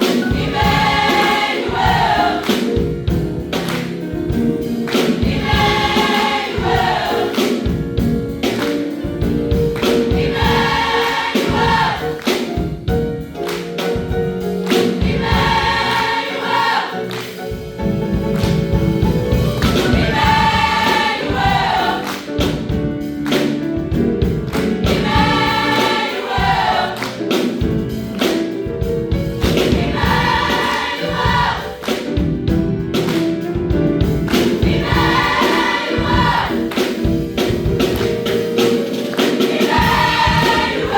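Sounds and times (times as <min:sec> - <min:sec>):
choir singing gospel song: 0:00.0 - 0:04.1, 0:04.8 - 0:07.8, 0:09.7 - 0:12.6, 0:14.6 - 0:17.4, 0:19.2 - 0:22.7, 0:24.4 - 0:27.6, 0:29.4 - 0:32.2, 0:34.2 - 0:37.6, 0:38.8 - 0:40.9
instrumental accompaniment with beat: 0:00.0 - 0:40.9.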